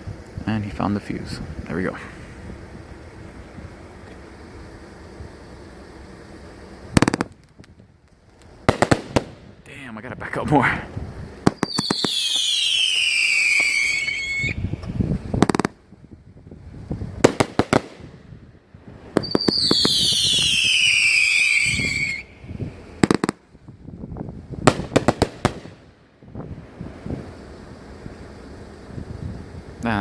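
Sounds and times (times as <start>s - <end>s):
fireworks shrill falling whistles: 3.2s - 7.8s, 11.1s - 15.8s, 18.9s - 23.4s
fireworks bangs and pops: 6.9s - 9.8s, 11.3s - 16.0s, 16.9s - 18.3s, 18.9s - 22.2s, 23.0s - 23.6s, 24.6s - 25.9s.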